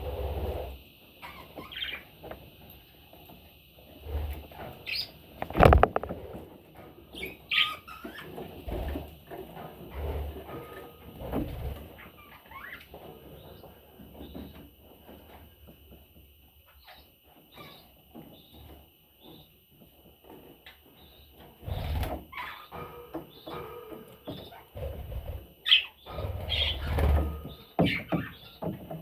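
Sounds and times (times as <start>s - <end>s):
handling bumps: 5.4s - 6.2s
loud knock: 5.4s - 6.2s
rustling: 5.4s - 6.4s
budgerigar chicks chirping: 25.6s - 28.7s.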